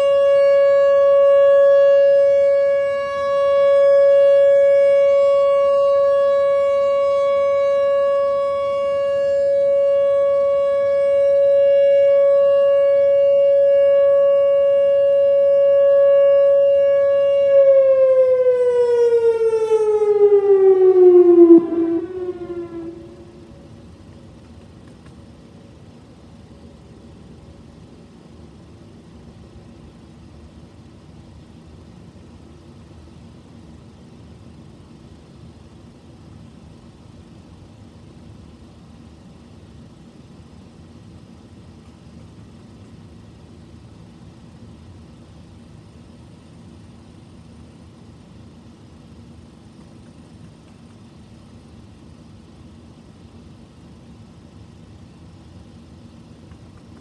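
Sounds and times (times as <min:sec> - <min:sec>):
faint falling siren tone: 0:00.0 - 0:24.0
low engine rumble: 0:00.0 - 0:57.0.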